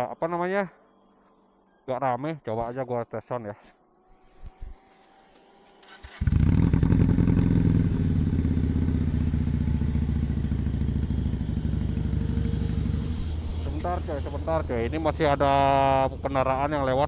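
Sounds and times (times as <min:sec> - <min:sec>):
motorcycle engine idling: 0:06.2 - 0:17.0.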